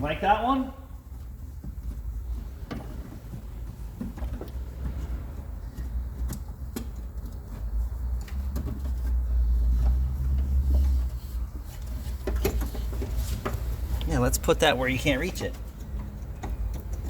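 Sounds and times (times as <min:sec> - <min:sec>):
tools and parts clicking: 0:15.3 - 0:17.0.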